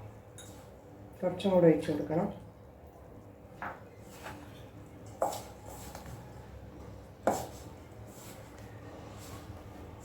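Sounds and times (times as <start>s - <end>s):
dough being mixed in bowl: 3.9s - 10.0s.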